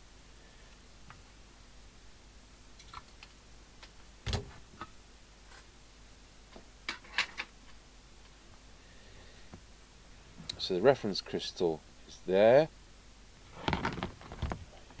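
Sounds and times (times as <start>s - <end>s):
loud thump: 4.3s - 4.6s.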